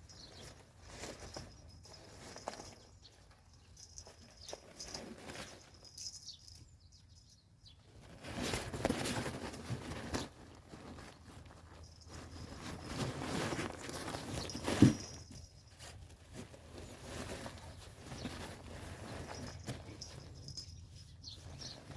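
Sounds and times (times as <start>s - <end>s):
faint birdsong: 0.0s - 8.1s, 16.7s - 21.9s
rustling and scuffling: 0.0s - 21.9s.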